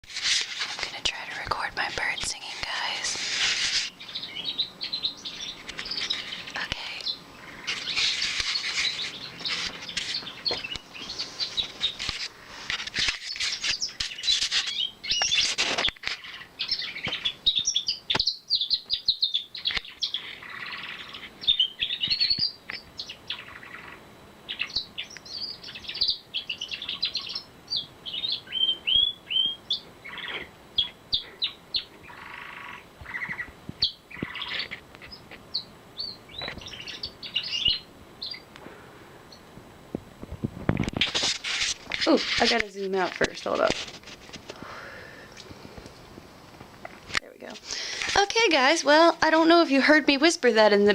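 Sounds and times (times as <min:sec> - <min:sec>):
canary singing trills: 0:03.9 - 0:12.0, 0:13.2 - 0:38.5.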